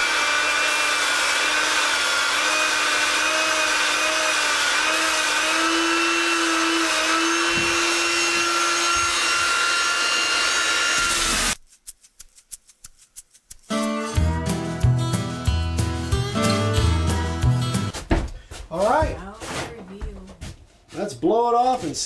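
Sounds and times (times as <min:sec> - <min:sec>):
belt sander whining: 0:00.0 - 0:11.6.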